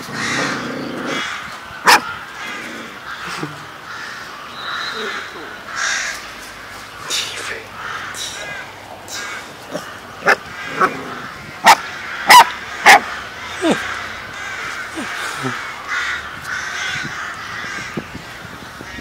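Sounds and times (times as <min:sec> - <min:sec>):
sharp animal calls: 0:00.0 - 0:03.3, 0:07.8 - 0:17.9.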